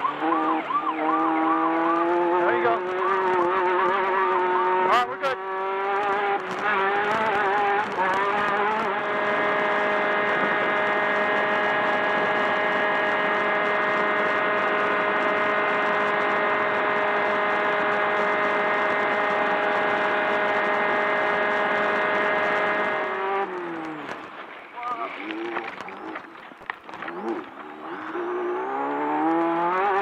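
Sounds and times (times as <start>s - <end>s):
buggy engine running: 0.0s - 30.0s
wind noise: 6.4s - 30.0s
tyre noise: 21.4s - 30.0s.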